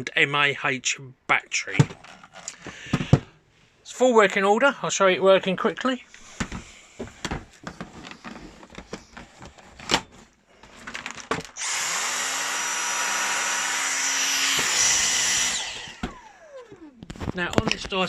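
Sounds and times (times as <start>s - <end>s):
vacuum motor whining: 11.6s - 16.8s.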